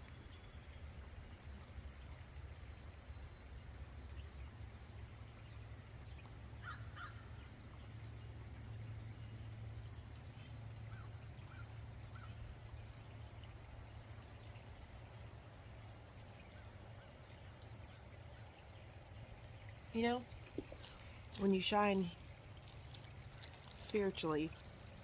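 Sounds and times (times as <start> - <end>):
crows cawing: 6.6 - 7.2.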